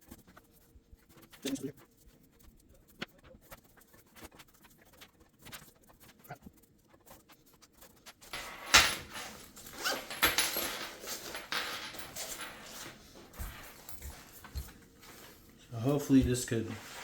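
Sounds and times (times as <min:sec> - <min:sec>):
foam rubbing and rustling: 0:00.0 - 0:08.3, 0:12.6 - 0:17.0.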